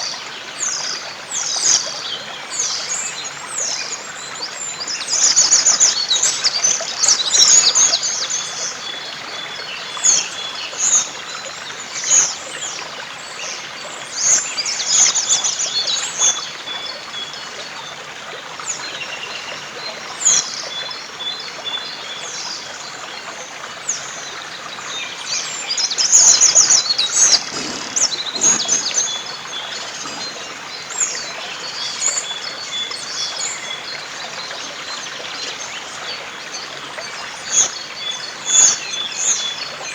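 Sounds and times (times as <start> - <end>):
songbirds singing: 24.2 - 39.6
river rushing: 27.1 - 31.1.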